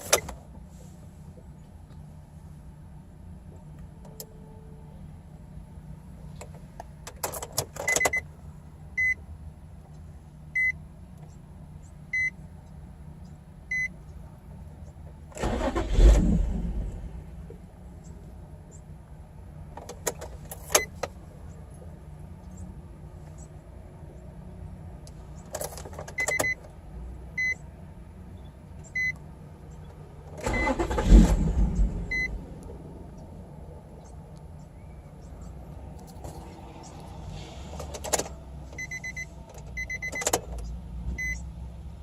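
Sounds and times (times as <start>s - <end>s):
car warning chime beeps: 7.8s - 8.3s, 9.0s - 9.2s, 10.5s - 10.8s, 12.1s - 12.4s, 13.7s - 14.0s, 26.1s - 26.6s, 27.3s - 27.6s, 28.8s - 29.2s, 30.4s - 31.0s, 32.1s - 32.4s, 38.7s - 40.5s, 41.2s - 41.5s
car engine cranking by starter: 15.3s - 18.2s, 30.2s - 34.1s, 35.9s - 41.6s.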